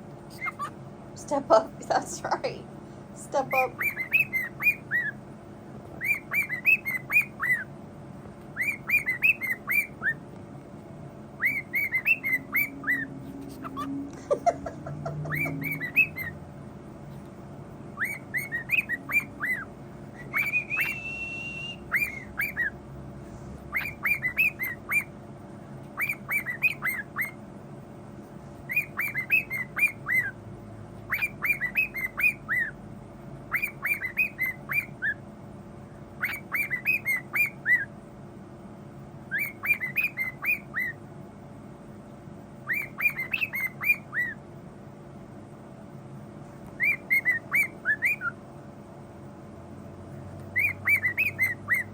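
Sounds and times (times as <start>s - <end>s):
bird whistling chirps: 0.3s - 0.8s, 3.4s - 5.2s, 6.0s - 7.7s, 8.5s - 10.2s, 11.4s - 14.0s, 15.2s - 16.4s, 17.9s - 22.8s, 23.6s - 25.1s, 25.9s - 27.4s, 28.6s - 30.4s, 31.0s - 32.8s, 33.5s - 35.2s, 36.2s - 37.9s, 39.3s - 41.0s, 42.6s - 44.4s, 46.8s - 48.4s, 50.5s - 51.9s.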